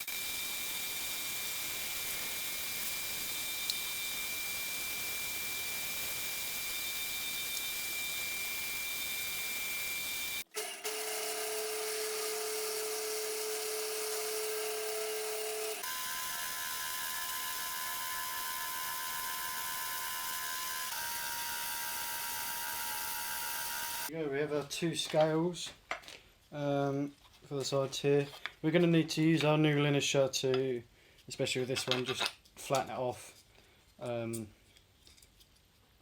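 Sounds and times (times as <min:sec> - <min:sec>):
bandsaw cutting wood: 0:00.0 - 0:24.1.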